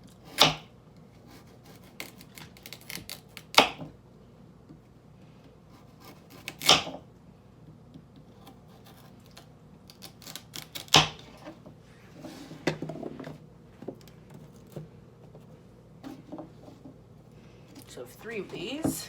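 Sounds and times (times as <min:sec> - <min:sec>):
knife chopping vegetables: 0:00.2 - 0:03.9, 0:05.7 - 0:07.0.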